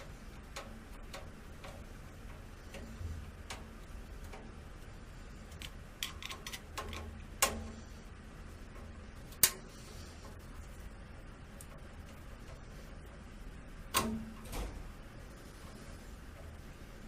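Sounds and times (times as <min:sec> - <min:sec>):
faint low hum: 0:00.0 - 0:17.0.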